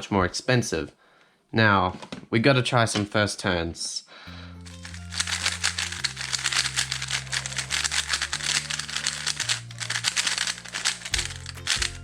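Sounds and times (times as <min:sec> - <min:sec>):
background music with bass: 0:04.3 - 0:12.0
plastic puzzle cube clicking: 0:04.7 - 0:12.0.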